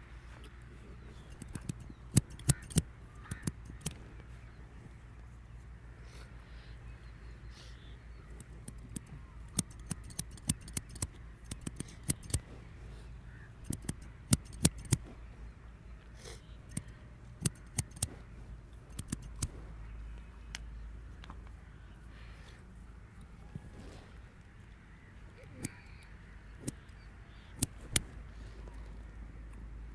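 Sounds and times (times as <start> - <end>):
metal scissors snipping: 1.3 - 4.0, 8.4 - 12.4, 13.6 - 15.0, 16.7 - 18.1, 18.9 - 19.5, 27.6 - 28.1.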